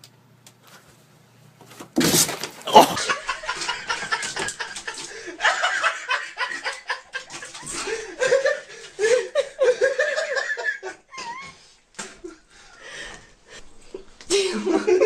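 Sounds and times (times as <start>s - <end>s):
people laughing loudly: 2.7s - 12.4s, 14.3s - 15.0s.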